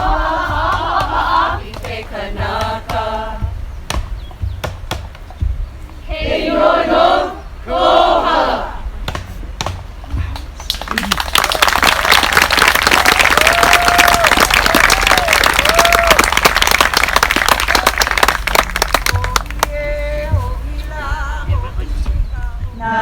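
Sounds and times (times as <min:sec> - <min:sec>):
audience applauding: 0:10.6 - 0:19.8.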